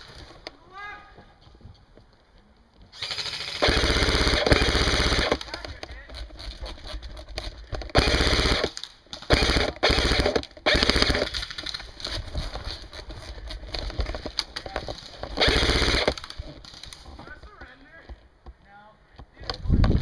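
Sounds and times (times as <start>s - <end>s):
airsoft gun firing bursts: 3.0s - 6.4s, 7.8s - 11.8s, 15.2s - 16.5s.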